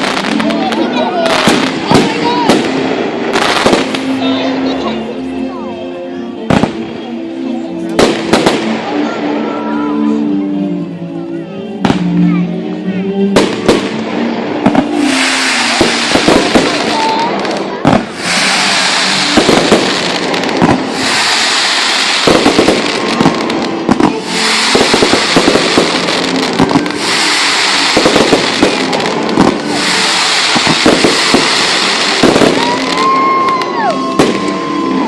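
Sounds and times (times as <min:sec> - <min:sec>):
firework bangs: 0:00.0 - 0:04.2, 0:06.5 - 0:06.8, 0:08.0 - 0:09.2, 0:13.3 - 0:34.9
firework crackling: 0:00.0 - 0:04.9, 0:07.9 - 0:10.0, 0:13.3 - 0:35.0
firework whistling: 0:14.8 - 0:35.0.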